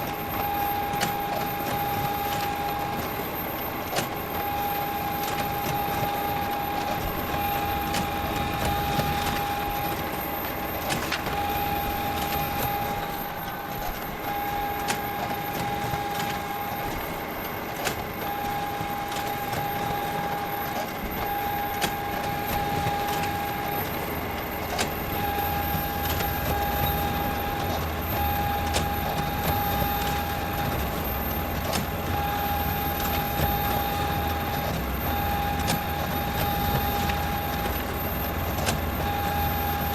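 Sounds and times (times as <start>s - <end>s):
high-pitched whine: 0.0s - 39.9s
photocopier mechanical hum: 0.0s - 39.9s
photocopier clicks: 10.7s - 39.9s.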